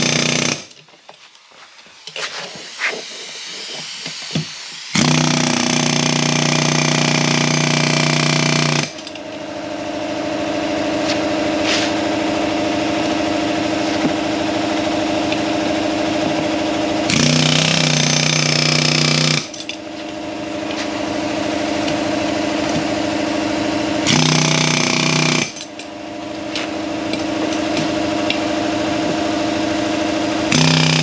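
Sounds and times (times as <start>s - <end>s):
pneumatic air hammer firing: 0.0s - 0.8s, 2.0s - 9.3s, 17.0s - 19.8s, 24.0s - 28.6s, 30.3s - 31.0s
steady machine hum: 9.0s - 31.0s.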